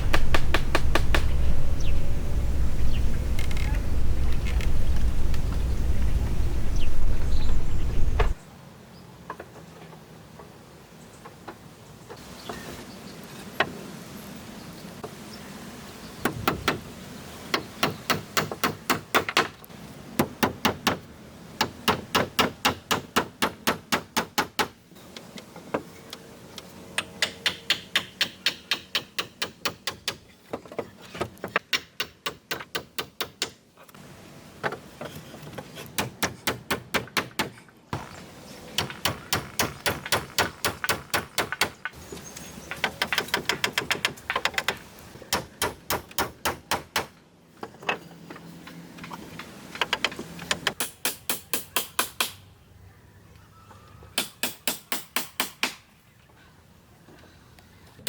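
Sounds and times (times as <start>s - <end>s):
hammer blows on wood: 0.0s - 8.4s.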